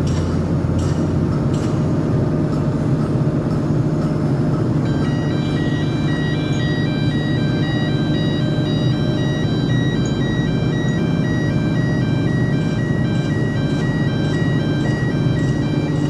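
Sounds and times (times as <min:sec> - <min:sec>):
steady low drone: 0:00.0 - 0:16.0
tinkling electronic jingle: 0:04.9 - 0:16.0.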